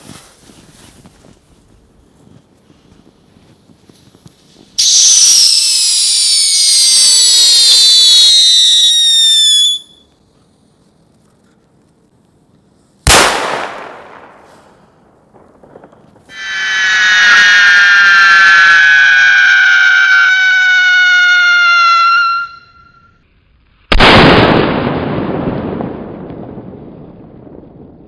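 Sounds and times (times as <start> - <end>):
firecracker bang: 4.8 - 9.8, 13.1 - 20.8, 23.9 - 28.0
whistling firecracker whistle: 4.8 - 10.1, 16.3 - 23.2.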